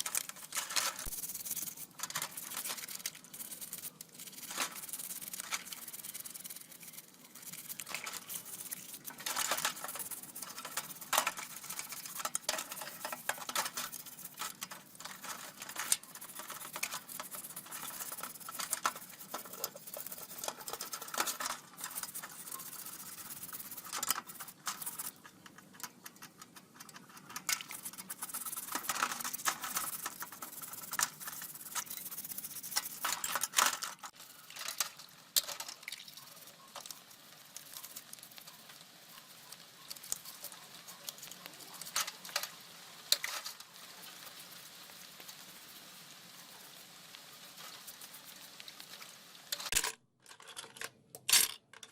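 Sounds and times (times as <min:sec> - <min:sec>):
tools clicking on small parts: 0:00.0 - 0:35.8, 0:49.5 - 0:51.9.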